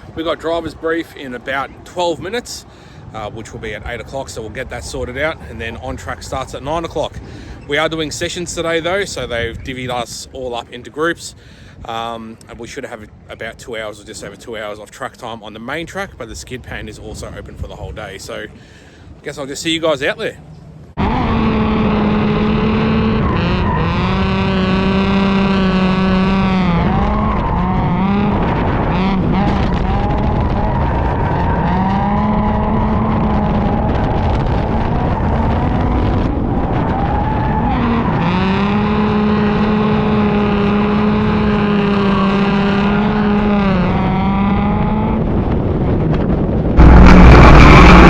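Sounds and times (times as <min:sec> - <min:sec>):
car engines revving high: 0:21.0 - 0:48.0.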